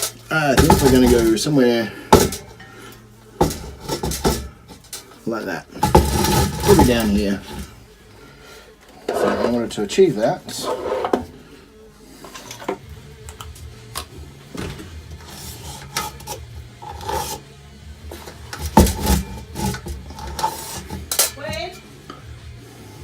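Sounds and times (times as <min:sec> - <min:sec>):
tools clinking and scraping: 0:00.0 - 0:07.8, 0:08.8 - 0:09.8, 0:10.5 - 0:11.4, 0:12.1 - 0:14.1, 0:15.2 - 0:17.5, 0:18.1 - 0:22.3
low uneven hum: 0:00.0 - 0:23.0.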